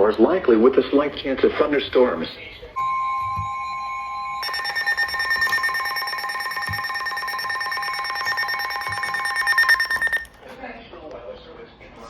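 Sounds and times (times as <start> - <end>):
electronic weather alert alarm: 2.8 - 10.4.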